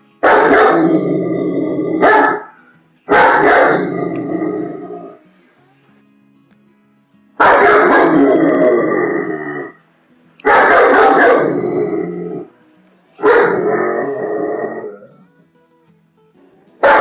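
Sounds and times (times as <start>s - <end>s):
faint background music: 0.0s - 17.0s
dog barking: 0.2s - 0.9s, 2.0s - 4.0s, 7.4s - 8.4s, 10.4s - 11.8s, 13.2s - 13.9s, 16.8s - 17.0s.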